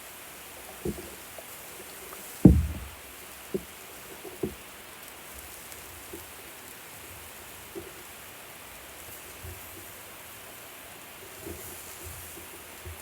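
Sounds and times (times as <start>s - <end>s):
steady hiss: 0.0s - 13.0s
heavy low thump: 2.4s - 3.0s
light knocks: 2.4s - 3.7s.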